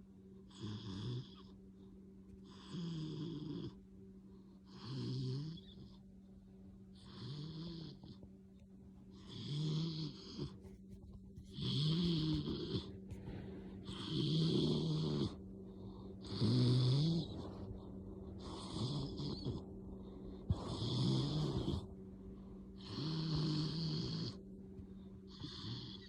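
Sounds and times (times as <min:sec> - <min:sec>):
dog snoring loudly: 0:00.5 - 0:01.5, 0:02.4 - 0:03.8, 0:04.7 - 0:06.0, 0:07.0 - 0:08.2, 0:09.2 - 0:10.7, 0:11.4 - 0:17.6, 0:18.4 - 0:19.6, 0:20.5 - 0:21.9, 0:22.8 - 0:24.4, 0:25.3 - 0:26.0.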